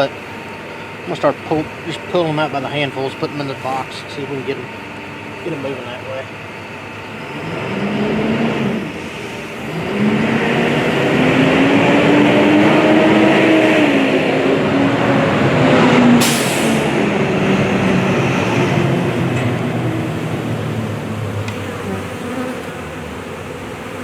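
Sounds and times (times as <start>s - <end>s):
honeybee swarm buzzing: 6.7s - 13.9s, 16.8s - 24.0s.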